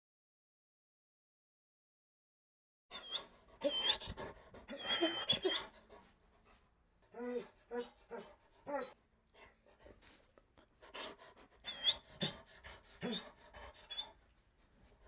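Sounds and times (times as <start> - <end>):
dog whining: 2.9 - 5.8, 7.1 - 9.0, 11.0 - 12.4, 13.0 - 14.2
dog panting: 3.0 - 15.0.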